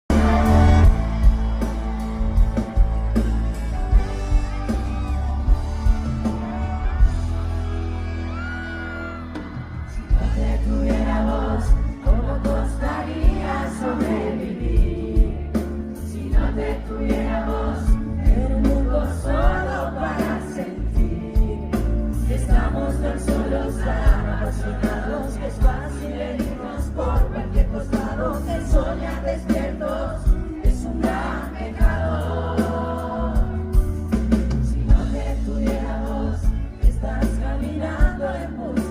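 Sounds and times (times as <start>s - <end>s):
live pop-rock band: 0.0s - 38.9s
crowd whooping: 0.1s - 10.4s.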